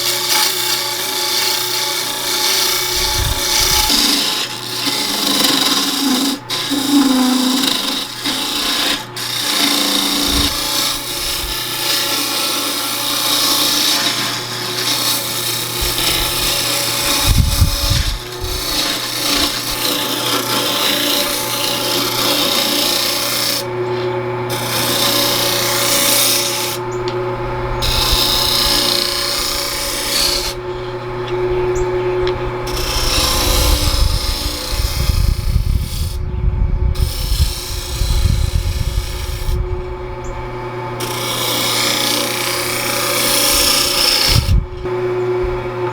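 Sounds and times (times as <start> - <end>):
lathe motor hum: 0.0 - 36.2, 37.0 - 45.9
turning tool scraping wood: 0.0 - 36.2, 37.0 - 44.9.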